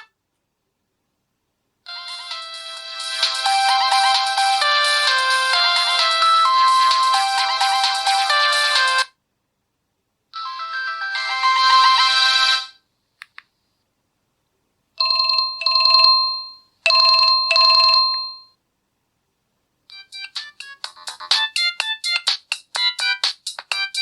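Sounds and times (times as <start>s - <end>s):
phone ring tone: 15.0s - 18.6s.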